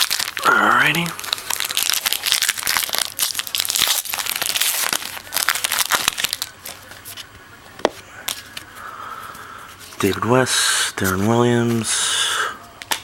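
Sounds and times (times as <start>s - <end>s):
wrapper tearing and crinkling: 0.0s - 7.0s.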